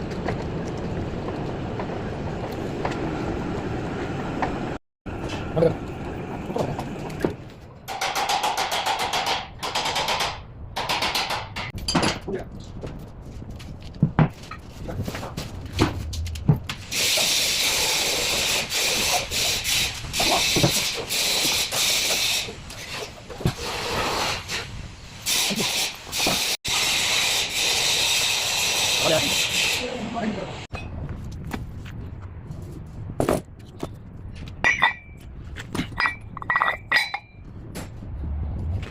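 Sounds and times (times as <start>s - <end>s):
loud hiss: 16.8s - 22.6s, 23.5s - 30.0s
metal tools clinking together: 34.6s - 35.2s, 35.9s - 37.4s.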